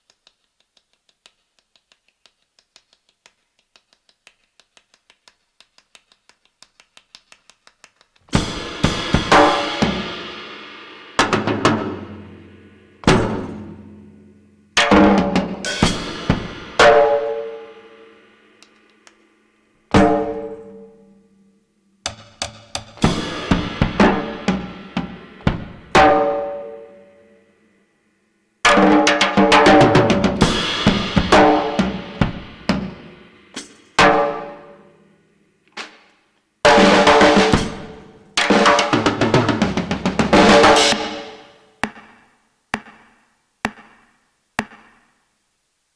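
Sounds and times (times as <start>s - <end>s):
drum kit playing: 8.3s - 19.2s, 19.9s - 20.8s, 22.1s - 26.8s, 28.7s - 34.9s, 36.7s - 42.2s.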